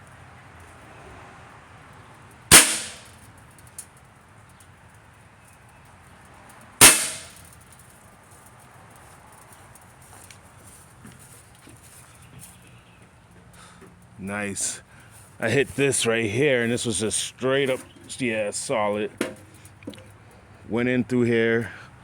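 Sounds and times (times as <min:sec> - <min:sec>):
air gun shots: 0:02.5 - 0:03.2, 0:06.8 - 0:07.5.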